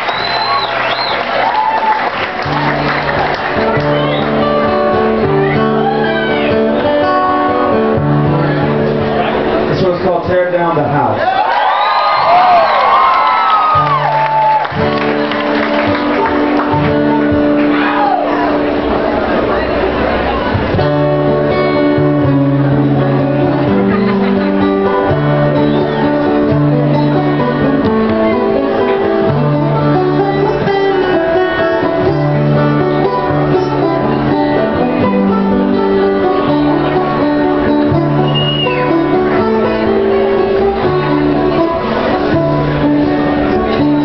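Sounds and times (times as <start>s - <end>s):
strummed acoustic guitar: 2.3s - 10.9s, 13.7s - 44.0s
low bass notes: 16.0s - 44.0s.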